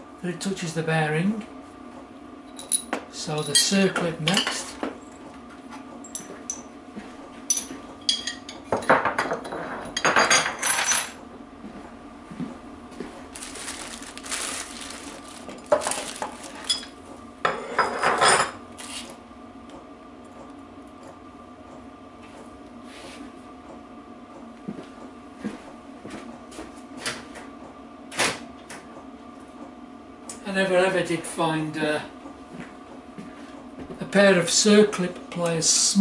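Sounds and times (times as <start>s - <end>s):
faint steady hum: 0.0s - 26.2s
metal tools clinking and rattling: 15.7s - 16.9s.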